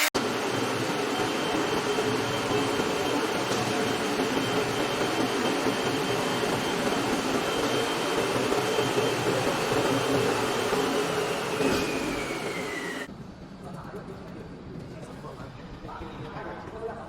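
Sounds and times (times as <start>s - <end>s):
floor grinder whining: 0.0s - 13.1s.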